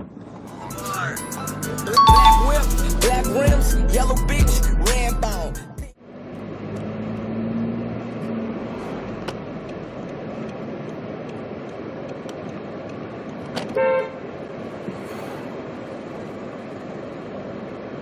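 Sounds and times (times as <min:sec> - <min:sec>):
street traffic noise: 0:00.0 - 0:18.0.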